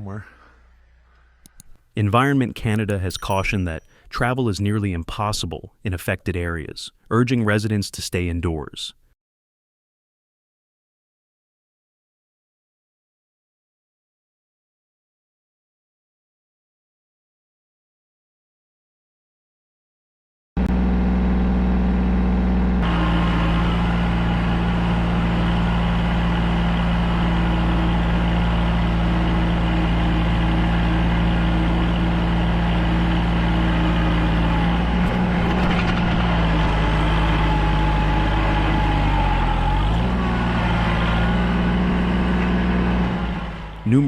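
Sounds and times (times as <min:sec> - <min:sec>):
engine running steadily: 0:20.6 - 0:44.0.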